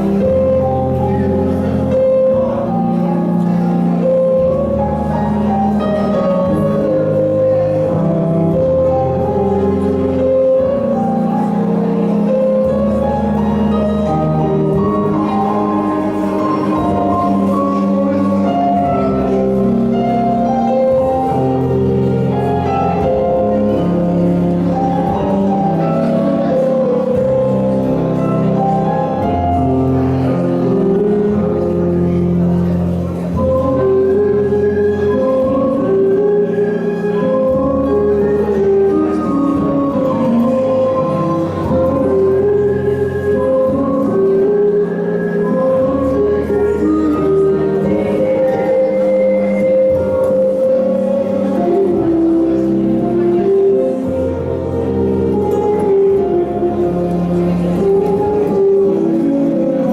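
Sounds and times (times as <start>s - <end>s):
instrumental dance music: 0.0s - 59.9s.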